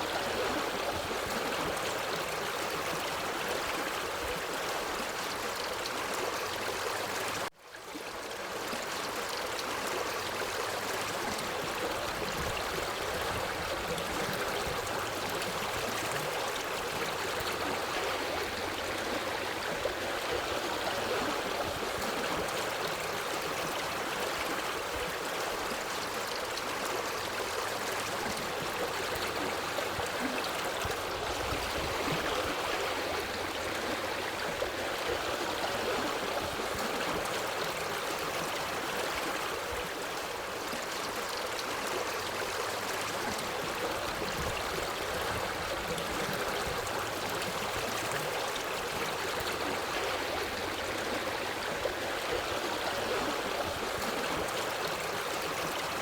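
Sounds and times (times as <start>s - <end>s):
water stream flowing: 0.0s - 56.0s.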